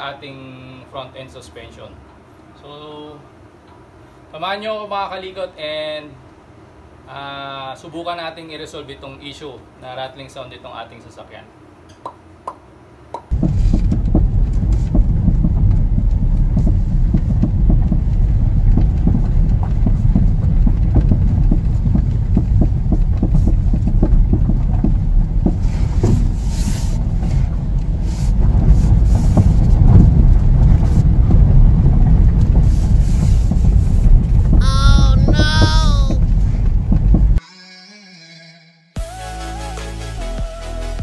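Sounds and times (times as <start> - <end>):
suspension knocks and rattles: 13.3 - 34.6, 36.2 - 37.4
road and wind noise rumble: 13.3 - 37.4.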